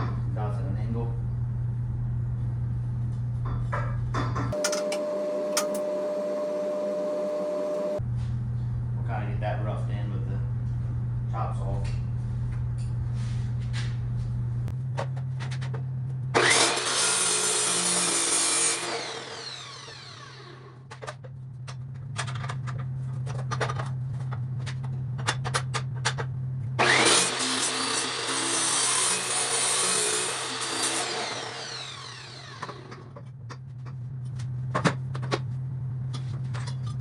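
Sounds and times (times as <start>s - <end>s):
power grinder grinding metal: 4.6s - 8.0s, 16.4s - 20.7s, 26.8s - 33.1s
steady low hum: 4.6s - 14.9s.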